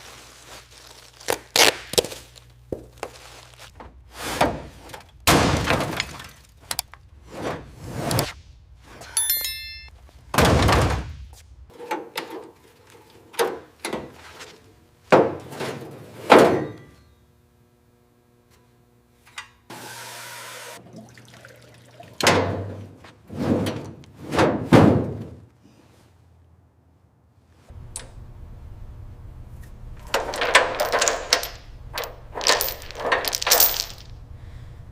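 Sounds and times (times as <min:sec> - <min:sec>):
ringing tone: 0:09.1 - 0:09.9.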